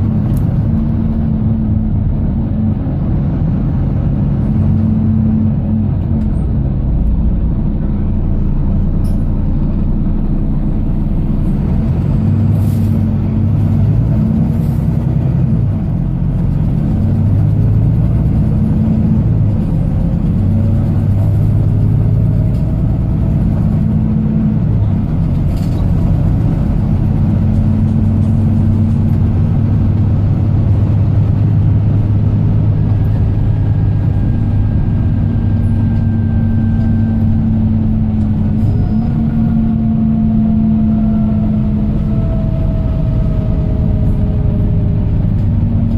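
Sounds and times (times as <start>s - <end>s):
bus diesel engine running: 0.0s - 45.9s
road rumble: 0.0s - 45.9s.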